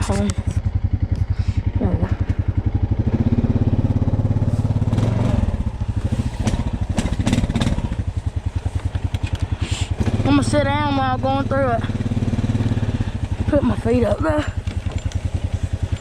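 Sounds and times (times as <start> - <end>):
engine chugging at low revs: 0.0 - 16.0
sharp knocks: 6.4 - 8.0.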